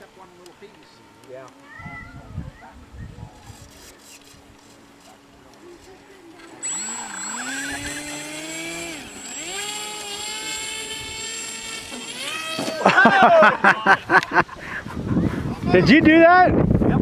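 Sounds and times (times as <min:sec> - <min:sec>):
electric motor whining: 0:06.3 - 0:13.2.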